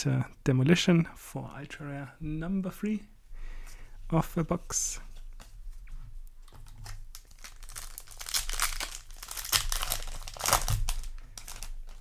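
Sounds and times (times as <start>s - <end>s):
foil wrapper crinkling and tearing: 6.4s - 12.0s.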